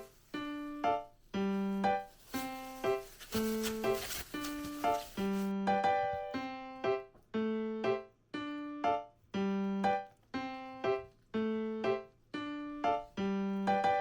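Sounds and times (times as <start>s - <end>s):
light piano melody: 0.0s - 14.0s.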